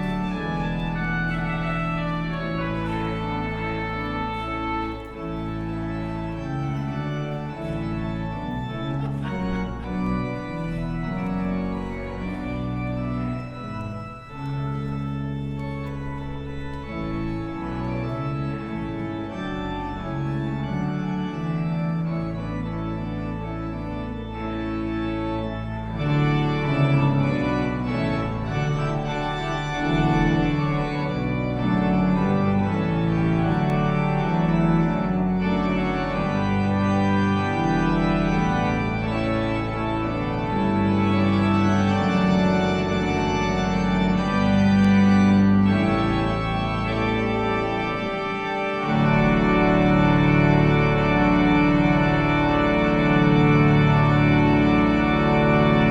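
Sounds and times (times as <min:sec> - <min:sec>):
organ playing chords: 0:00.0 - 0:55.9.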